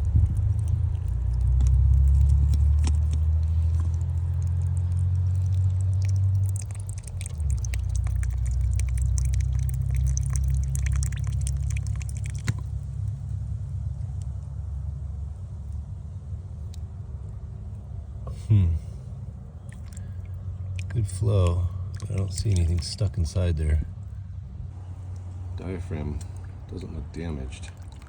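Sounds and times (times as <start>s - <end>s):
steady low rumble: 0.0s - 28.0s
plastic parts clicking and scraping: 1.0s - 4.1s.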